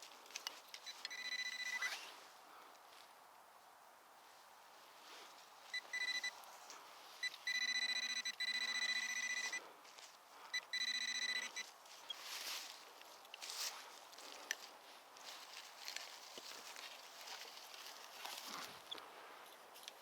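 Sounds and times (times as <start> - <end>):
metal detector beeps and tones: 0.8 - 2.1, 5.7 - 6.4, 7.2 - 9.6, 10.5 - 11.7.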